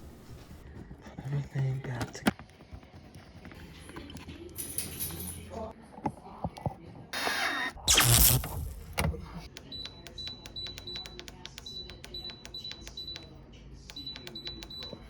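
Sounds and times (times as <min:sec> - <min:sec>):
keypad button clicks with beeps: 0:08.0 - 0:15.0.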